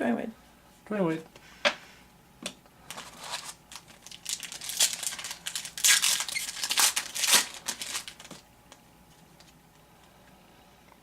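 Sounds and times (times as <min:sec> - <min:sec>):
card pack wrapper crinkling and tearing: 0:02.9 - 0:08.4.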